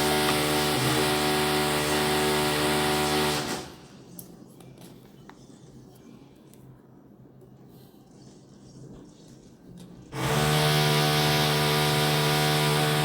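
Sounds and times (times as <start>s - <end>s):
power tool motor humming: 0.0s - 3.8s, 10.2s - 13.0s.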